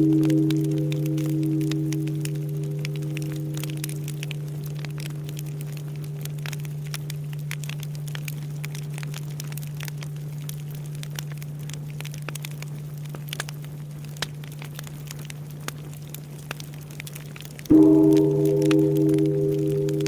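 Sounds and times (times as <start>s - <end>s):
temple bell humming: 0.0s - 6.8s, 17.7s - 20.0s
bonfire crackling and popping: 0.0s - 20.0s.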